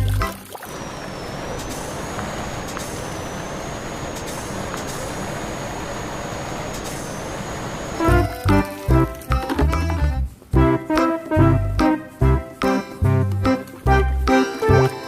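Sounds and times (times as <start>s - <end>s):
faint high whine: 0.0s - 8.4s
steady rushing hiss: 0.7s - 9.0s
music with a beat: 8.1s - 15.0s.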